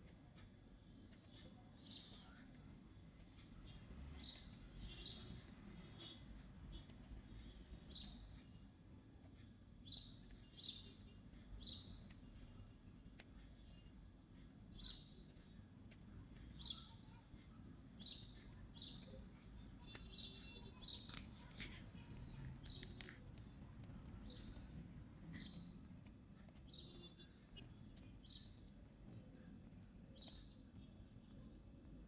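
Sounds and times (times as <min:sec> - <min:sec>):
faint bird chirping: 0:00.0 - 0:32.0
sharp clicks: 0:20.8 - 0:26.9.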